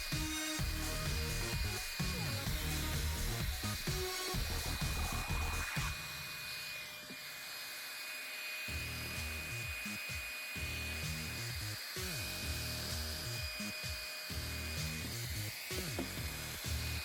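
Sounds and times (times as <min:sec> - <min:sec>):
background music: 0:00.0 - 0:06.0, 0:14.3 - 0:17.0
blow dryer motor whine: 0:00.0 - 0:17.0.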